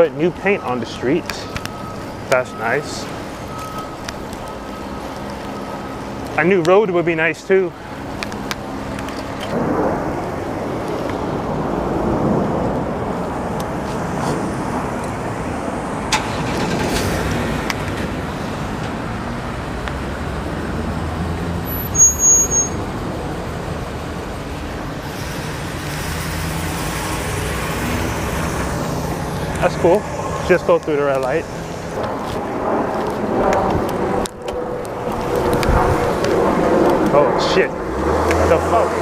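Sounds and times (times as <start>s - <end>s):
city traffic: 0.0s - 39.0s
motor vehicles passing: 0.0s - 39.0s.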